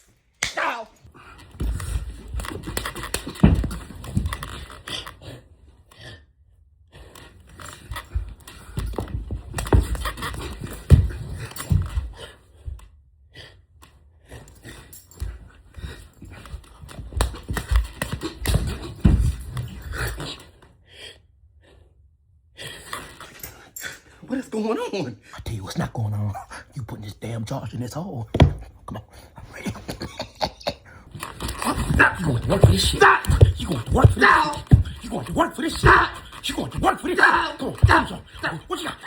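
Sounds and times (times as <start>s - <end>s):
knocks and bumps: 28.3s - 28.8s, 31.1s - 39.0s
person panting and grunting: 28.4s - 39.0s.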